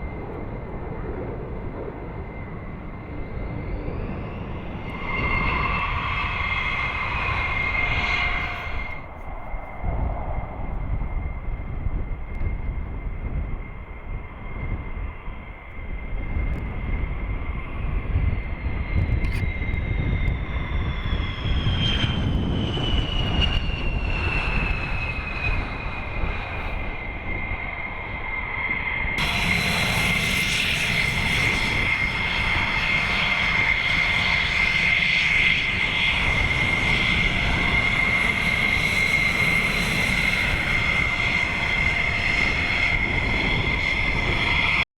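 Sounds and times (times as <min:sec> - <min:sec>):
falling whine: 0:00.0 - 0:44.9
jet engine whine: 0:00.0 - 0:44.9
jet engine hiss: 0:23.3 - 0:44.8.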